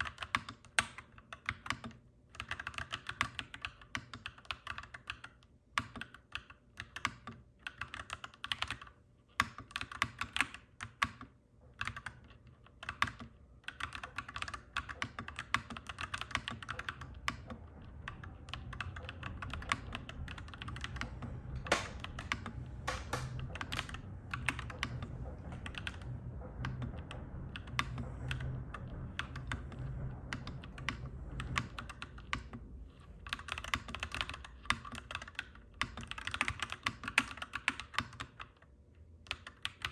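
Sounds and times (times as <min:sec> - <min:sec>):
mechanical keyboard typing: 0:00.0 - 0:25.0, 0:33.2 - 0:38.6, 0:39.3 - 0:39.9
low rumble of passing train: 0:16.6 - 0:34.6.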